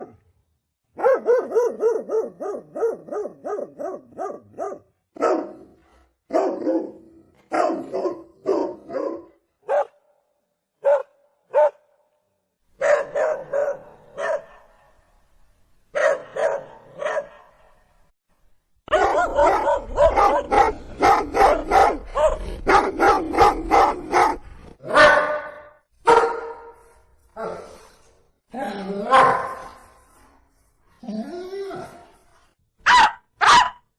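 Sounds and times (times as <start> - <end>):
small dog barking: 1.0 - 5.6, 6.3 - 10.0, 10.8 - 11.8, 12.8 - 14.7, 16.0 - 17.5, 18.9 - 26.6, 29.1 - 29.7, 32.8 - 33.8.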